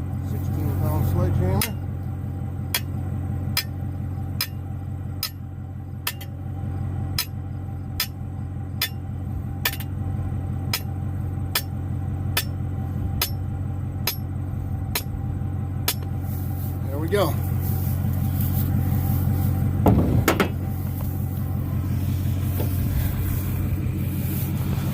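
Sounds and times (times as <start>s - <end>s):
engine running: 0.0s - 24.9s
sledgehammer striking fence post: 2.7s - 3.8s, 4.4s - 4.6s, 5.2s - 5.4s, 6.0s - 6.4s, 7.1s - 7.4s, 8.0s - 8.2s, 8.8s - 9.0s, 9.6s - 10.0s, 10.7s - 12.6s, 13.2s - 14.3s, 14.9s - 15.2s, 15.8s - 16.1s, 19.8s - 20.6s.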